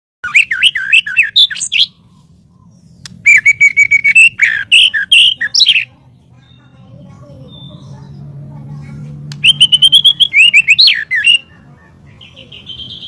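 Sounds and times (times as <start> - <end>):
bird singing whistled phrases: 0.2 - 2.0, 2.6 - 6.7, 7.4 - 7.9, 9.4 - 11.6, 12.2 - 13.0.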